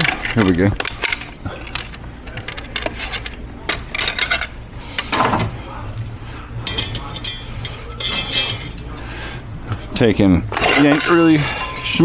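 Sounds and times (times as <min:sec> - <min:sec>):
metal clinks and scrapes: 0:06.6 - 0:09.0, 0:10.5 - 0:12.0.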